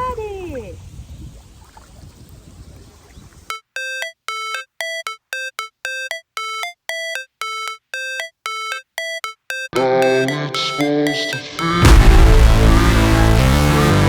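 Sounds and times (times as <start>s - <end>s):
electronic synth beeps: 3.5s - 12.8s
music track: 3.5s - 14.0s.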